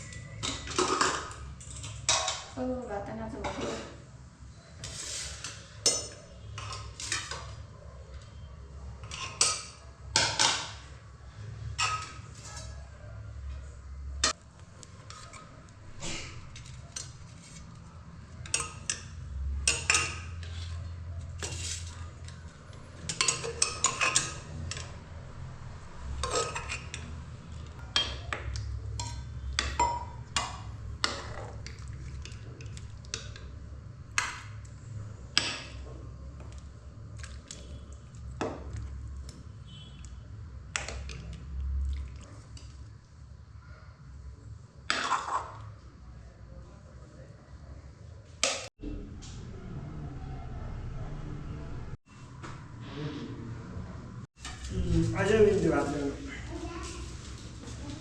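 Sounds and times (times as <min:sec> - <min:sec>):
utensils clinking on metal plates: 0:00.0 - 0:02.6, 0:23.0 - 0:25.0, 0:26.1 - 0:32.4.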